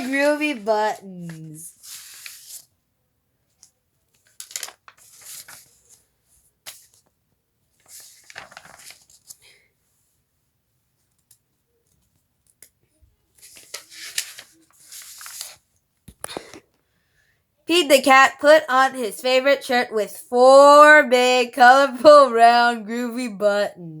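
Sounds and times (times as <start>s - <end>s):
book pages turning: 0.0s - 2.7s, 3.6s - 7.1s, 7.8s - 9.4s, 13.4s - 16.6s.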